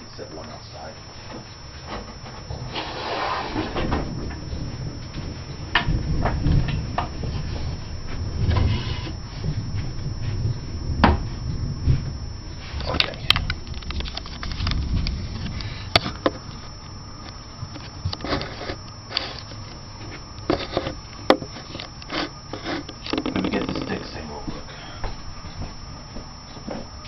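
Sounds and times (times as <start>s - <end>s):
low rumble: 3.8s - 18.1s
wooden creaking and squeaks: 20.1s - 24.2s.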